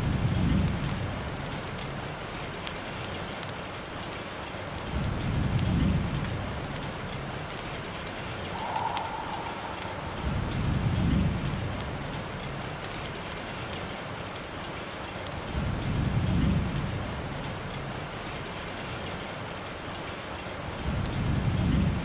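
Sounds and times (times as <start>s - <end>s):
low rumbles of thunder: 0.0s - 2.1s, 4.8s - 7.6s, 8.2s - 13.0s, 15.5s - 18.2s, 20.8s - 22.0s
sharp rain drop ticks: 0.0s - 22.0s
steady rain: 0.0s - 22.0s.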